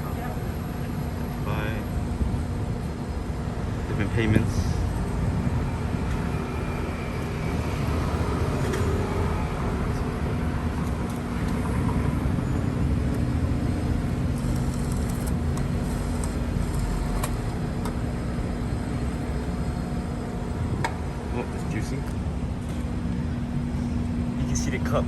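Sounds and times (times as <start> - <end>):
mechanical hum: 0.0 - 25.0
low rumble: 1.9 - 10.8.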